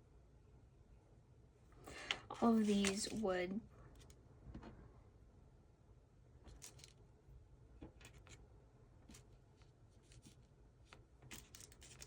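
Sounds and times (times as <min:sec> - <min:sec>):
faint clicks and rustles: 0:07.8 - 0:12.0.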